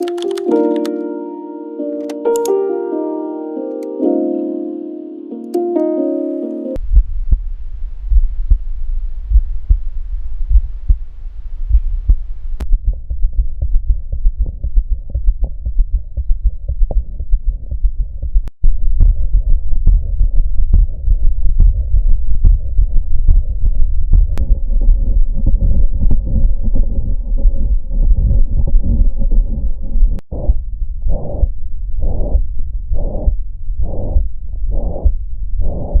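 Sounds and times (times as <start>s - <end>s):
heartbeat thumps: 6.8s - 36.0s
low rumble of chest contact: 6.8s - 36.0s.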